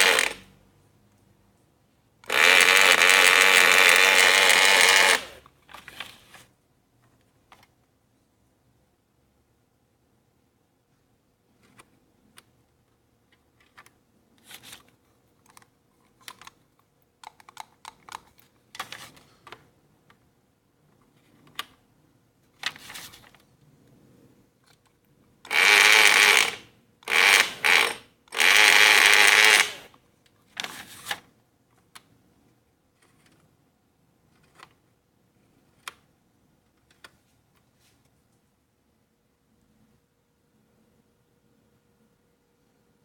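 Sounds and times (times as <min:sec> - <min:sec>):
sewing machine mechanism clicking: 0:00.0 - 0:00.4, 0:25.5 - 0:29.9
sewing machine running: 0:00.0 - 0:00.4, 0:02.2 - 0:05.4, 0:25.5 - 0:29.9.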